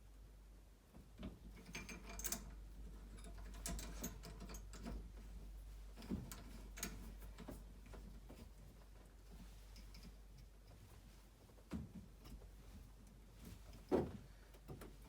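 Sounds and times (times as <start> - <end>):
metallic clicks and clinks: 1.6 - 2.5.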